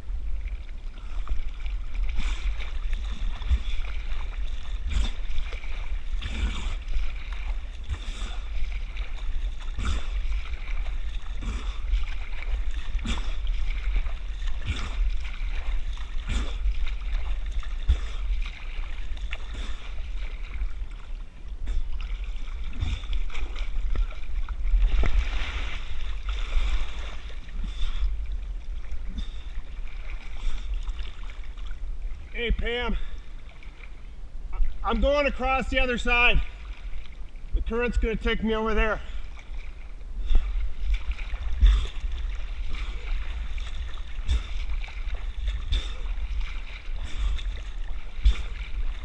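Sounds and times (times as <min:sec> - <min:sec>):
low rumble: 0:00.0 - 0:35.2, 0:39.1 - 0:49.0
water splashing: 0:00.0 - 0:49.0.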